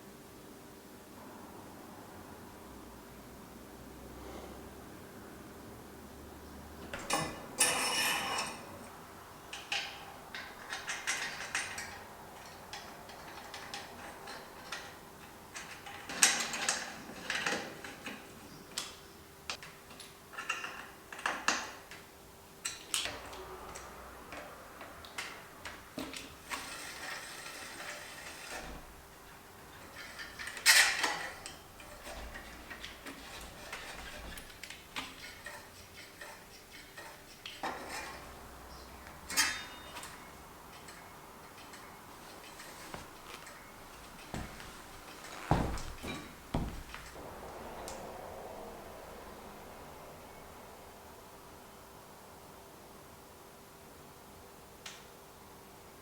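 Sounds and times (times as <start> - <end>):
faint steady hum: 28.4 - 56.0.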